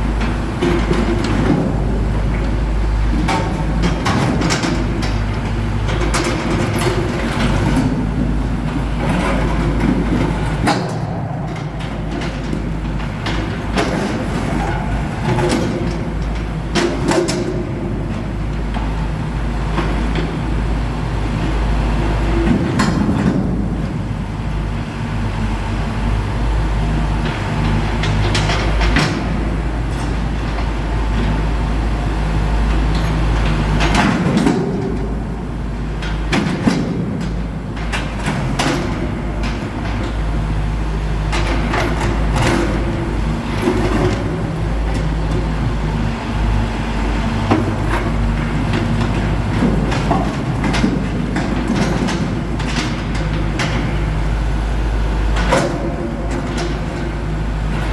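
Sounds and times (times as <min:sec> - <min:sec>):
backhoe diesel engine working: 0:00.0 - 0:57.9.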